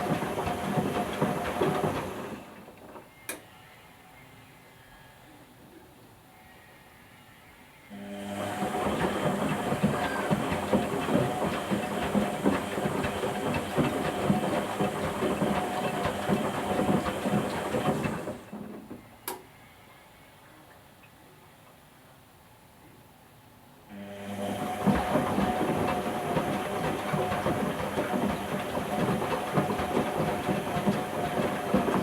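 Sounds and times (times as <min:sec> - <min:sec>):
objects knocking in washer drum: 0:00.0 - 0:02.3, 0:08.6 - 0:19.0, 0:24.5 - 0:32.0
washing machine motor hum: 0:00.0 - 0:03.0, 0:07.9 - 0:19.0, 0:23.9 - 0:32.0.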